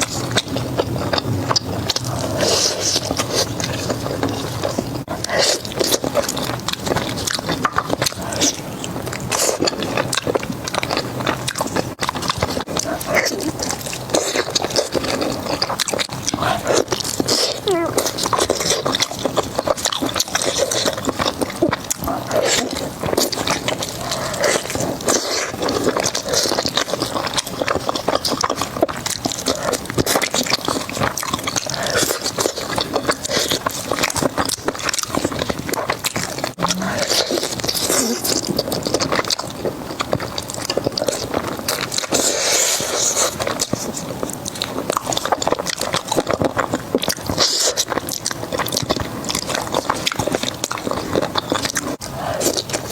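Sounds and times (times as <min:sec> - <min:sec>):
chewing crispy food: 0:00.0 - 0:52.9
wet mouth clicks: 0:28.6 - 0:38.9.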